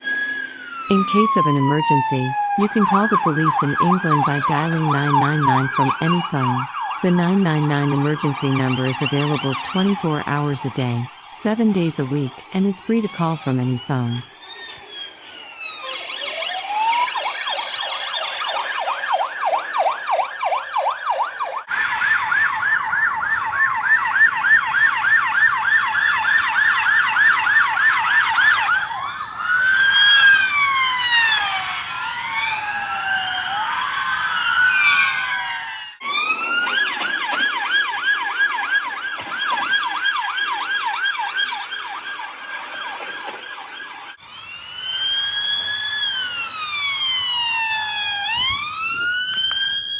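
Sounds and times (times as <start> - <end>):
police sirens yelping and wailing: 0.0 - 49.9.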